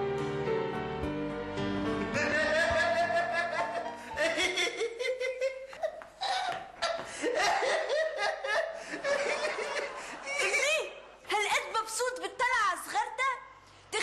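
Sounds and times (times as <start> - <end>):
man laughing hard: 2.2 - 10.6.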